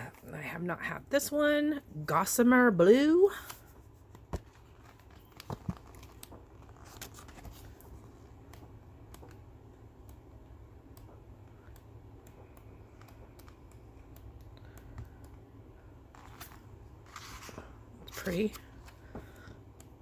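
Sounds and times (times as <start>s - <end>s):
paper pages rustling: 3.4s - 8.3s, 16.2s - 19.2s
soft paper ticks: 4.9s - 15.5s.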